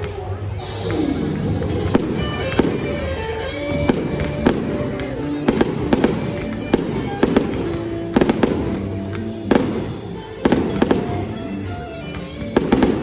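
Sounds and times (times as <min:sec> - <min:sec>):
background music: 0:00.0 - 0:13.0
fireworks bangs: 0:01.3 - 0:13.0.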